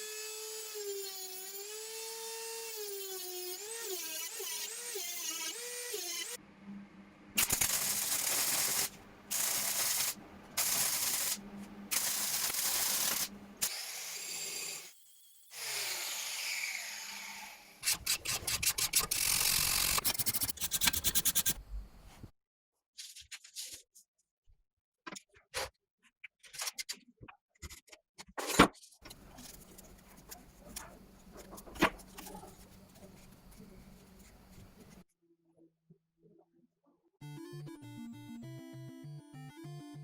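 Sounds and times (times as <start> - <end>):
quick rubbing strokes: 19.2 - 21.6.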